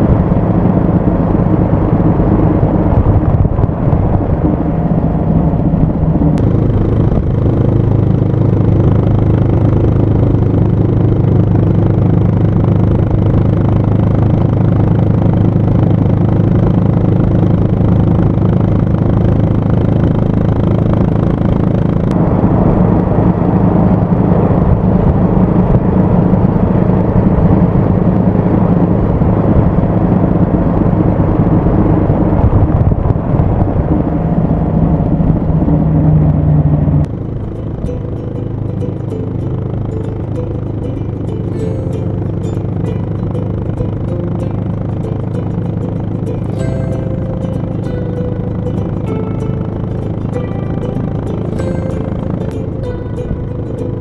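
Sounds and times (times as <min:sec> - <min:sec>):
single-cylinder motorcycle engine: 0:06.2 - 0:22.1.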